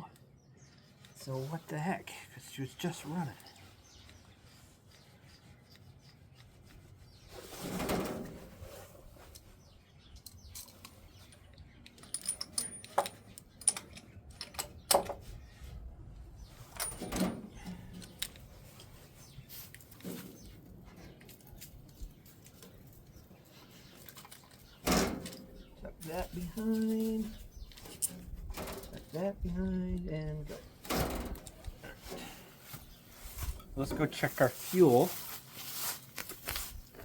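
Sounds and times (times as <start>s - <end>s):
soft rubbing: 32.6s - 36.9s.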